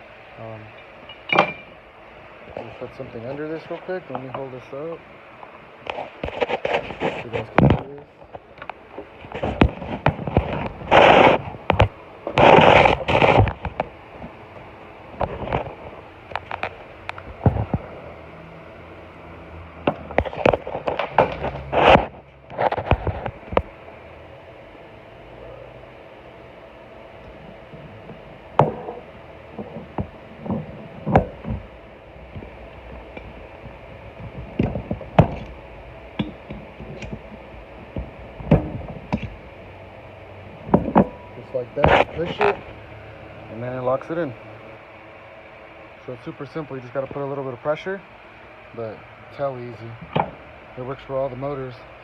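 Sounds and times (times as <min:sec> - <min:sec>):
metal parts clicking and clunking: 0:00.7 - 0:01.8, 0:32.3 - 0:39.4
tool and metal parts knocking: 0:01.1 - 0:01.8
scraping rustle: 0:05.8 - 0:14.4, 0:15.2 - 0:18.0, 0:20.0 - 0:23.6, 0:40.5 - 0:44.3.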